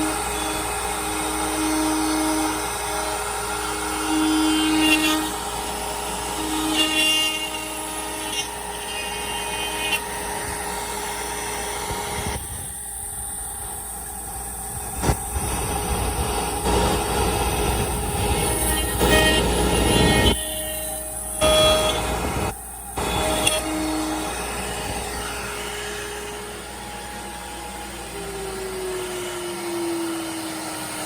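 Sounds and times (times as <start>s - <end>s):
end mill cutting wood: 0.0s - 13.0s, 15.0s - 31.0s
router spindle whine: 0.0s - 31.0s.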